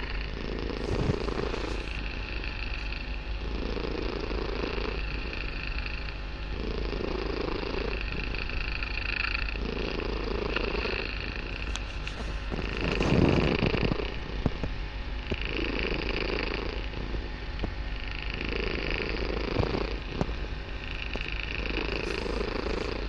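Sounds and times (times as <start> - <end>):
kitten purring: 0.0 - 23.0.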